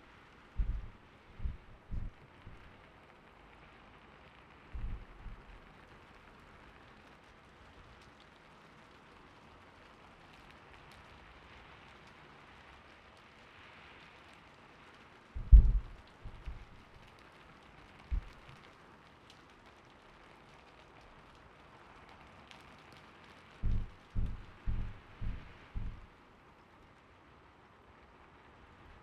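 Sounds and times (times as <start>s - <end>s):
gentle rain: 0.0s - 29.0s
soft low thumps: 0.6s - 2.8s, 4.8s - 5.6s, 15.4s - 16.8s, 18.1s - 18.4s, 23.6s - 26.1s.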